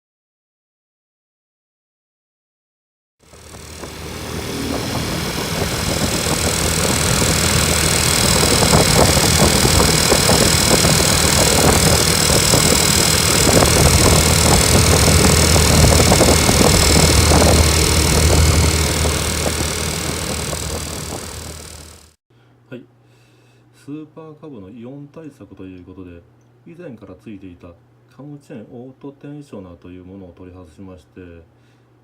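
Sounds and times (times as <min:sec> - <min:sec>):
motorcycle engine idling: 0:03.2 - 0:22.1.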